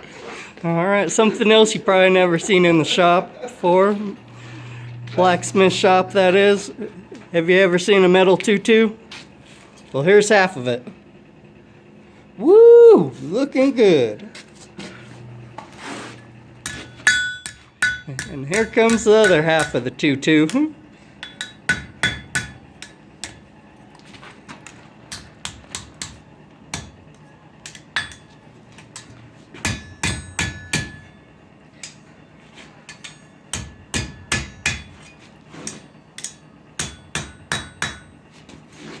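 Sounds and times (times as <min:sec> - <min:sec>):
hammer striking metal: 0:16.6 - 0:19.9, 0:21.2 - 0:23.5, 0:25.1 - 0:27.0, 0:27.6 - 0:28.4, 0:29.0 - 0:31.2, 0:32.9 - 0:38.2.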